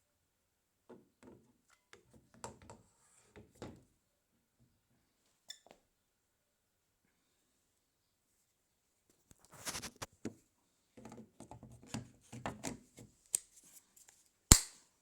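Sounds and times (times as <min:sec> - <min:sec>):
sharp loud click: 0:14.5 - 0:14.8.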